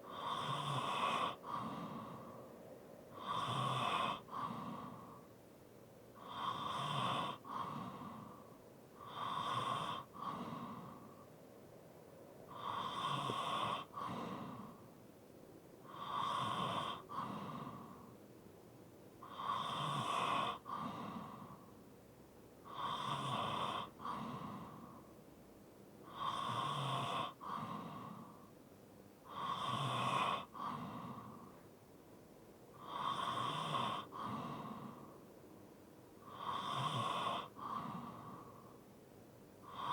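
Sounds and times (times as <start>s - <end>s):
sleeping person snoring: 0.1s - 2.3s, 3.1s - 5.2s, 6.2s - 8.4s, 9.0s - 11.1s, 12.5s - 14.8s, 15.9s - 18.1s, 19.2s - 21.7s, 22.6s - 25.0s, 26.0s - 28.4s, 29.3s - 31.6s, 32.8s - 35.2s, 36.2s - 38.7s, 39.6s - 39.9s.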